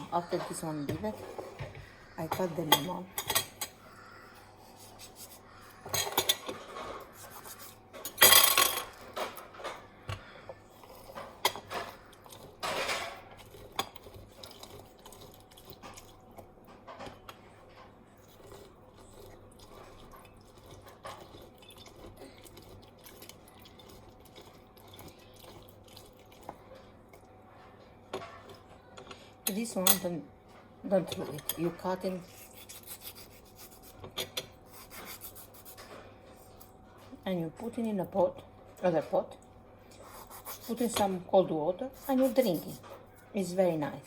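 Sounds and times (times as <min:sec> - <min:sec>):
knife and dishes clinking: 0:05.9 - 0:07.0.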